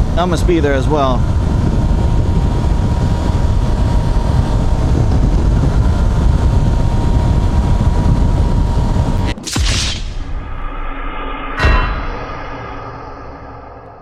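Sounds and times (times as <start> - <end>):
motorcycle engine running: 0.0 - 9.3
wind rumble on microphone: 0.0 - 10.8.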